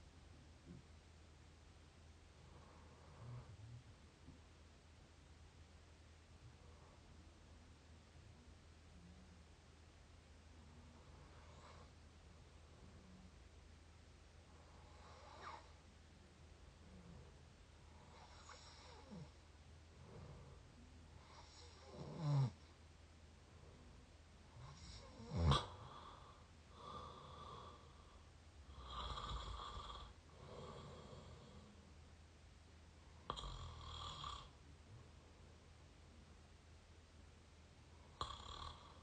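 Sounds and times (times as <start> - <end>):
faint low hum: 0.0 - 39.0
mouth snoring: 14.8 - 15.8, 18.0 - 19.4, 21.2 - 22.6, 24.6 - 28.1, 28.7 - 31.8, 33.3 - 34.6, 38.1 - 39.0.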